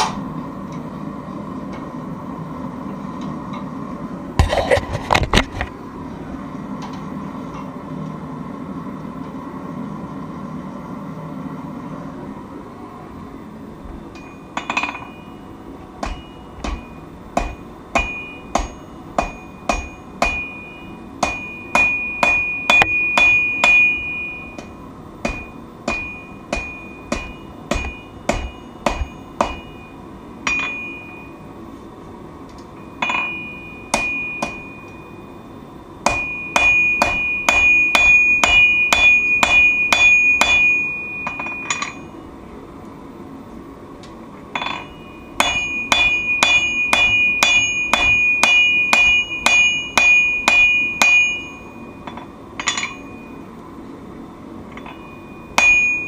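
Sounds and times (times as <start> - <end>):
hammer striking steel on anvil: 14.2 - 15.4, 16.0 - 31.4, 32.8 - 35.2, 36.0 - 42.1, 44.5 - 53.4, 54.7 - 56.0.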